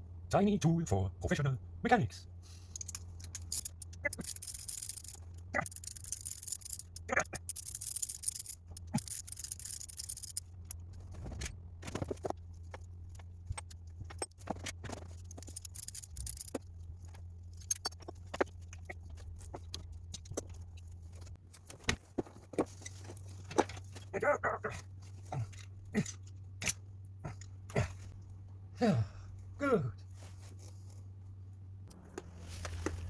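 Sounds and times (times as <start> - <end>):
low hum: 0.0 - 33.0
hand tools on metal parts: 2.4 - 28.6.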